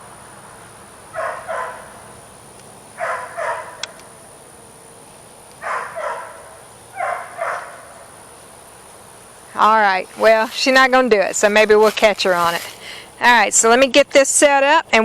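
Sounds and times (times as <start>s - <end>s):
dog barking: 1.1s - 2.0s, 3.0s - 3.9s, 5.6s - 8.1s.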